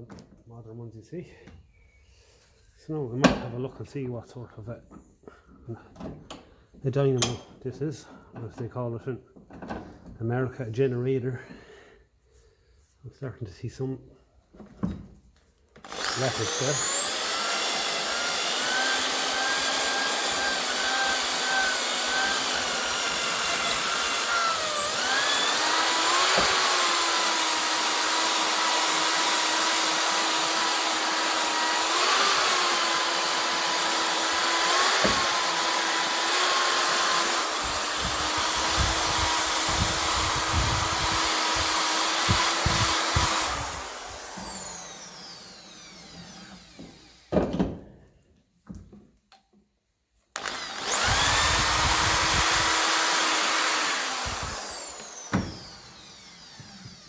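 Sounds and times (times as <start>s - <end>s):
power tool motor whining: 15.8s - 47.4s, 50.4s - 57.0s.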